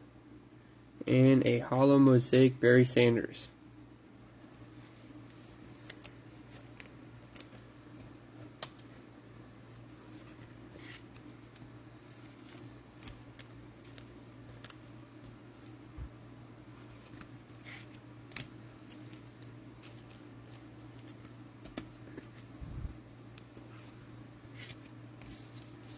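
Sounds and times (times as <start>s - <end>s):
low room hum: 0.0s - 25.9s
trading cards being handled: 4.5s - 9.0s, 9.6s - 16.0s, 16.6s - 22.6s, 23.3s - 25.9s.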